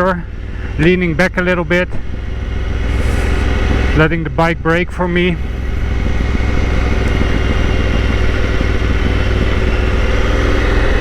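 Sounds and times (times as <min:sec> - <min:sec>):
motorcycle engine braking: 0:00.0 - 0:11.0.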